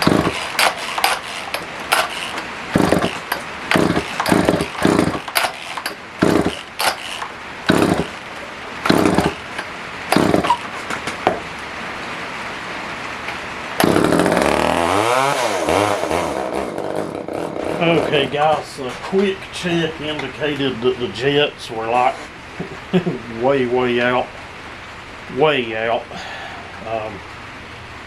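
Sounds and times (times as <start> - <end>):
chainsaw engine sputtering and running: 0.0 - 10.8, 13.8 - 18.3.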